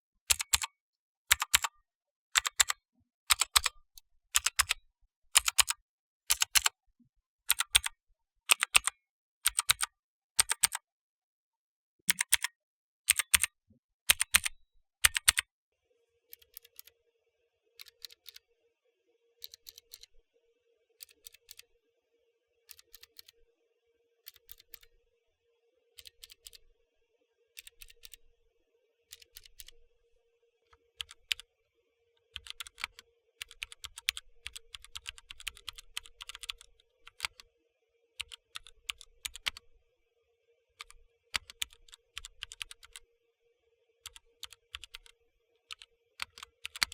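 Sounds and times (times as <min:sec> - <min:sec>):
fast continuous typing: 0:00.3 - 0:00.7, 0:01.3 - 0:01.8, 0:02.4 - 0:03.8, 0:04.4 - 0:04.8, 0:05.4 - 0:06.7, 0:07.5 - 0:08.9, 0:13.1 - 0:13.5, 0:14.1 - 0:14.5, 0:29.1 - 0:29.7, 0:30.8 - 0:31.4, 0:32.4 - 0:37.4, 0:38.2 - 0:39.6, 0:40.8 - 0:43.0, 0:44.1 - 0:46.9.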